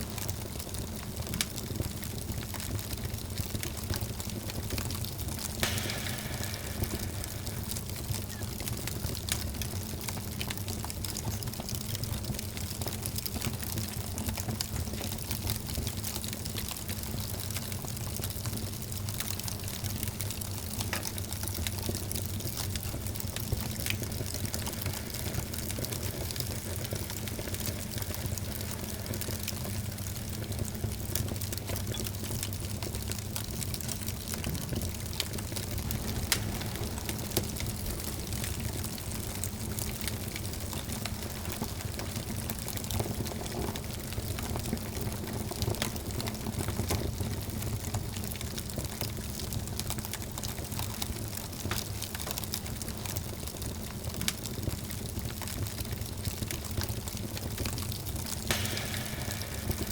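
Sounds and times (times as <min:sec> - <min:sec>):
fire crackles and pops: 0:00.0 - 0:59.9
fire flames rushing: 0:23.1 - 0:31.7.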